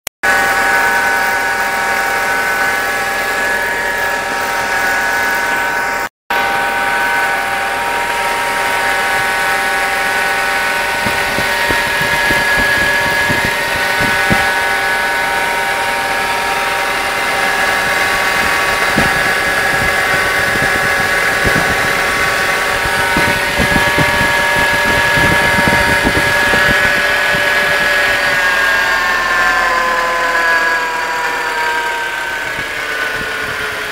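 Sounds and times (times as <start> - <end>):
droning bearing hum: 0.2 - 33.9
car engine running: 7.2 - 29.6.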